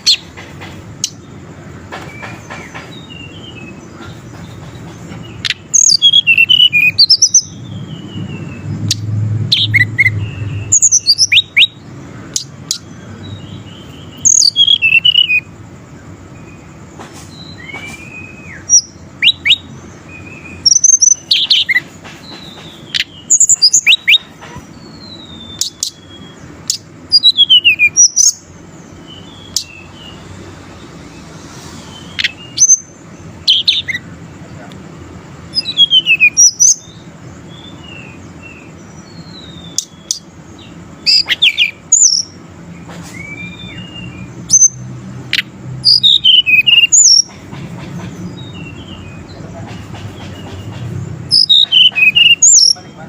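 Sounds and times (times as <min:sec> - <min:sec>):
bird chirps and whistles: 0:05.4 - 0:15.5, 0:17.3 - 0:28.4, 0:31.2 - 0:34.1, 0:35.5 - 0:37.0, 0:41.0 - 0:42.4, 0:43.0 - 0:47.3, 0:51.3 - 0:52.8.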